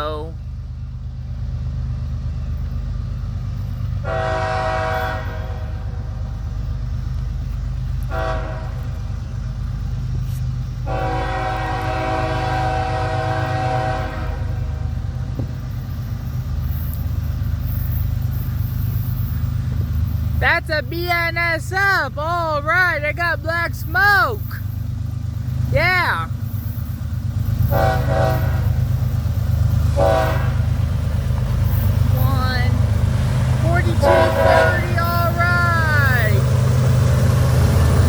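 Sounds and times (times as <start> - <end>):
diesel train rumble: 0.0 - 38.0
locomotive air horn blasts: 4.0 - 6.2, 8.1 - 9.0, 10.8 - 15.0, 27.6 - 29.0, 29.9 - 30.8, 33.6 - 36.4.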